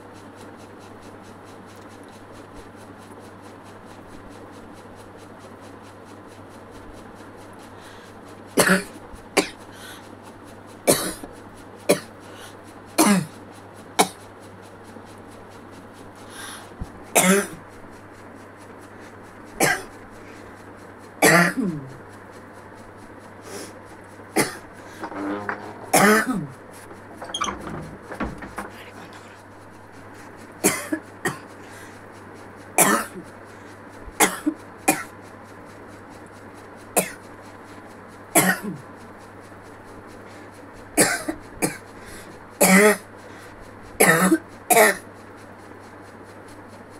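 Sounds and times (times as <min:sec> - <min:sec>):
person coughing: 0:08.6 - 0:09.5, 0:13.0 - 0:13.3, 0:17.2 - 0:17.6, 0:19.6 - 0:19.9, 0:21.2 - 0:21.9, 0:24.4 - 0:26.5, 0:32.8 - 0:33.2, 0:42.6 - 0:43.0, 0:44.0 - 0:45.0.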